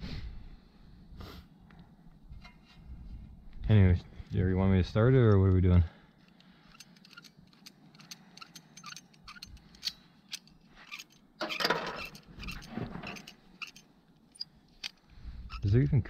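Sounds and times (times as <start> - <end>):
tools and parts clicking: 5.2 - 16.0
scraping rustle: 10.6 - 16.0.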